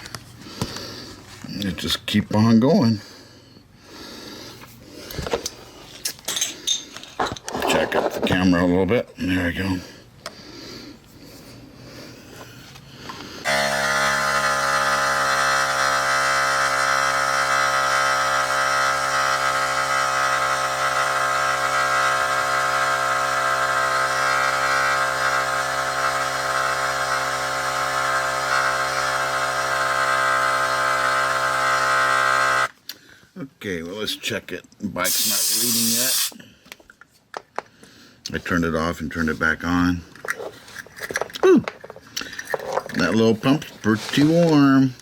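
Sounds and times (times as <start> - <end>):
air compressor motor buzzing: 13.4 - 32.7.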